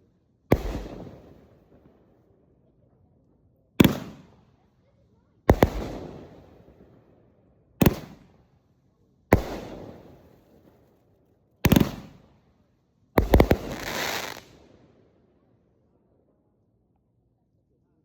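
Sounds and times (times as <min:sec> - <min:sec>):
fireworks bangs: 0:00.5 - 0:01.3, 0:11.7 - 0:12.2, 0:13.2 - 0:14.5
fireworks crackling hiss: 0:13.2 - 0:14.6.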